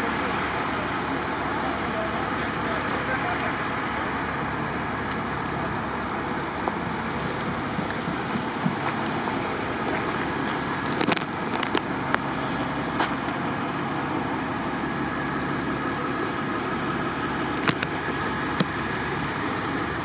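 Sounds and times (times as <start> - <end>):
vehicle engines running: 0.0 - 20.0
sharp clicks and knocks: 5.0 - 13.4.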